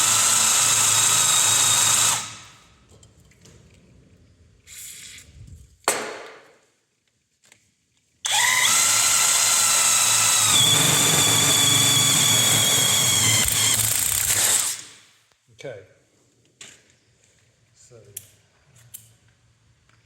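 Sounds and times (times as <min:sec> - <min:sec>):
impact wrench drilling steel: 0:00.0 - 0:02.6, 0:08.3 - 0:15.0.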